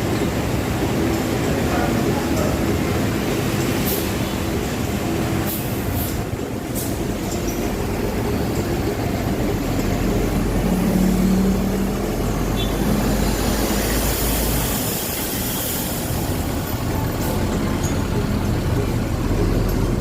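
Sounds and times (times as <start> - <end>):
large vehicle engine running: 0.0 - 20.0
road noise: 0.0 - 20.0
vehicle passing with rushing hiss: 10.1 - 16.9.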